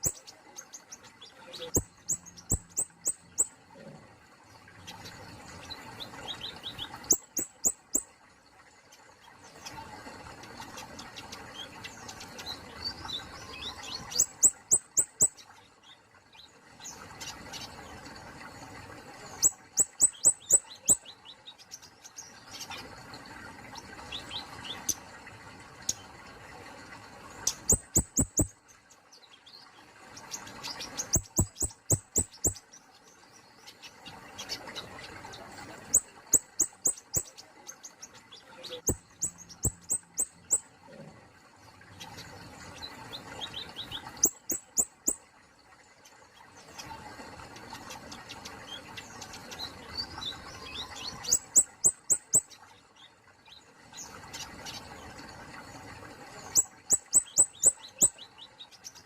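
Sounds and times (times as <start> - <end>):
soft bird twittering: 0.0 - 3.9, 4.8 - 8.2, 8.9 - 17.8, 19.2 - 22.9, 27.4 - 40.7, 42.0 - 45.2, 47.6 - 54.9, 56.3 - 59.0
songbird singing sharp notes: 1.3 - 3.5, 6.3 - 8.0, 19.4 - 21.3, 27.5 - 28.5, 31.0 - 32.6, 35.9 - 37.4, 38.5 - 40.7, 56.5 - 58.4.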